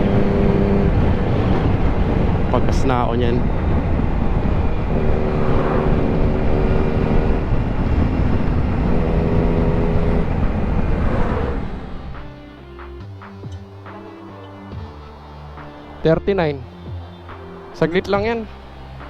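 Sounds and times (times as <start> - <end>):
motorcycle engine running: 0.0 - 12.5
wind rush on microphone: 0.0 - 12.5.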